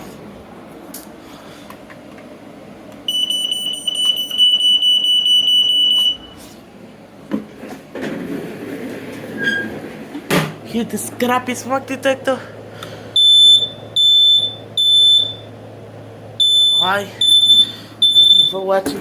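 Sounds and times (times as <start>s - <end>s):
smoke alarm tone: 3.1s - 6.4s, 13.2s - 15.5s, 16.4s - 18.7s.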